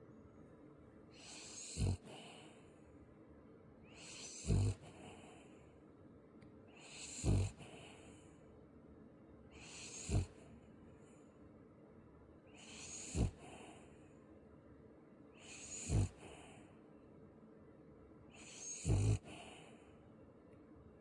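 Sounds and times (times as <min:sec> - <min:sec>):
pet snoring: 0:01.2 - 0:02.6, 0:04.0 - 0:05.6, 0:06.8 - 0:08.2, 0:09.6 - 0:10.5, 0:12.6 - 0:13.9, 0:15.4 - 0:16.6, 0:18.3 - 0:19.8.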